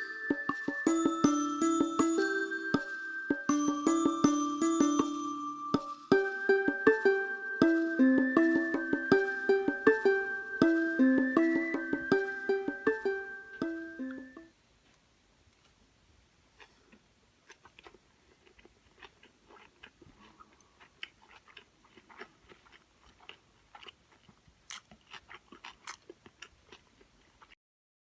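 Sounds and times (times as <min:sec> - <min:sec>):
person chewing food: 0:16.5 - 0:27.6.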